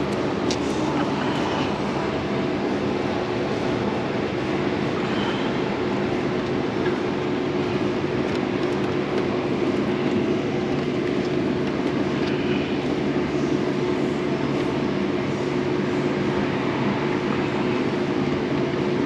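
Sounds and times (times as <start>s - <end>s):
machine drone: 0.0s - 19.0s.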